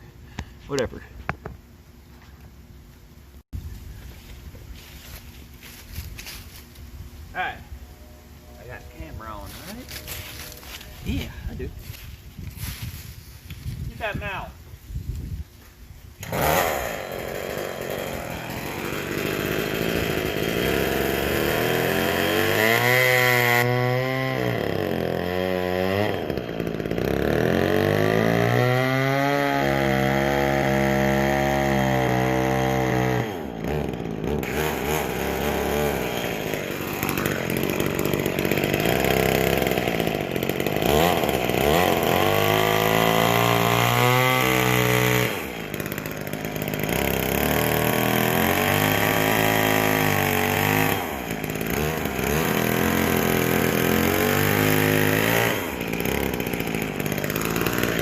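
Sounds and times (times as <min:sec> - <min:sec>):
chainsaw revving: 0:16.2 - 0:58.0.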